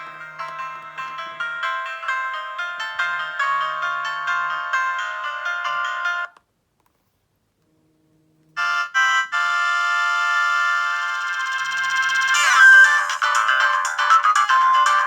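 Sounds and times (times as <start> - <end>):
long held ringtone chord: 0.0 - 6.3, 8.6 - 15.0
tinkling ringtone melody: 0.0 - 6.3, 11.0 - 15.0
short electronic blips: 11.9 - 13.2.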